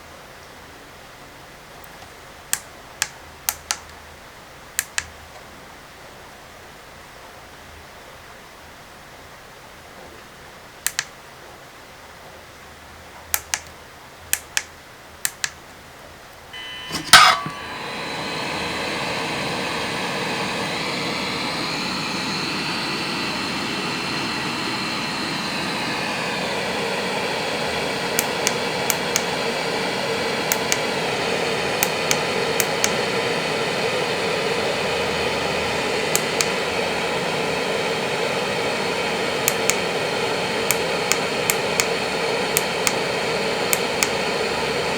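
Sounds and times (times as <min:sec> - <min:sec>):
sharp click: 0:04.8 - 0:05.1, 0:10.8 - 0:11.1, 0:13.3 - 0:13.7, 0:14.3 - 0:15.6, 0:43.7 - 0:44.2
light clicks: 0:10.8 - 0:11.2, 0:13.3 - 0:15.6
blower fan running with whine: 0:16.4 - 0:44.9.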